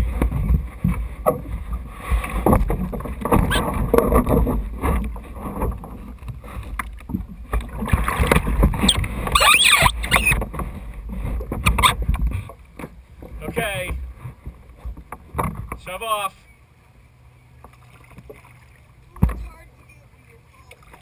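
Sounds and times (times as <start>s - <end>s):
wind rumble on microphone: 0.0s - 15.9s
water sloshing around kayak: 0.0s - 21.0s
high warbling sound: 9.3s - 10.4s.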